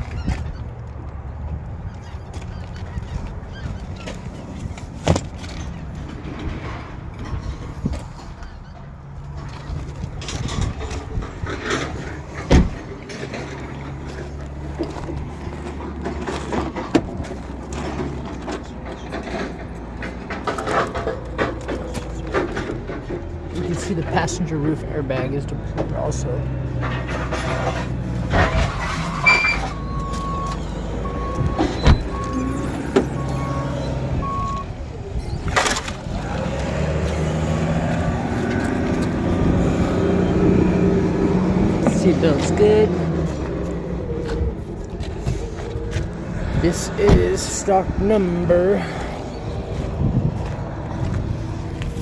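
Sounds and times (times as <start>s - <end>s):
vehicle engine running: 0.0s - 52.0s
loud clunk: 10.3s - 13.5s
vehicle backup alarm beeping: 27.2s - 46.0s.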